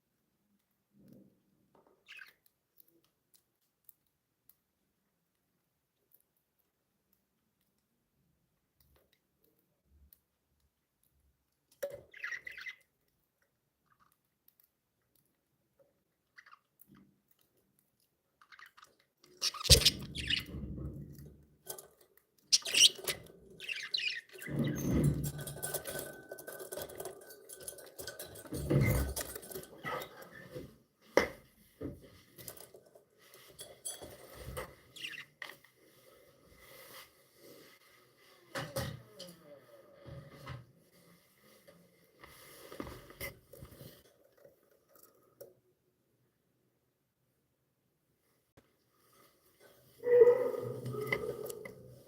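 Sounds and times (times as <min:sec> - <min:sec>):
budgerigars chirping: 0:19.4 - 0:20.5, 0:22.6 - 0:24.3.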